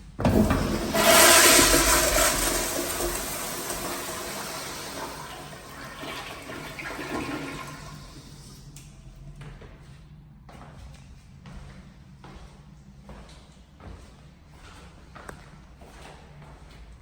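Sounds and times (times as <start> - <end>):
toilet flush water rushing: 0.2 - 8.7.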